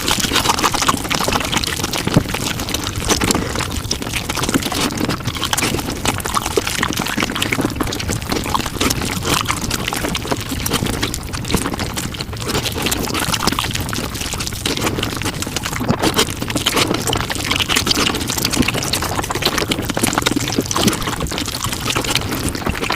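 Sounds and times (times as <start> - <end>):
sped-up chewing and mouth sounds: 0.0 - 22.9.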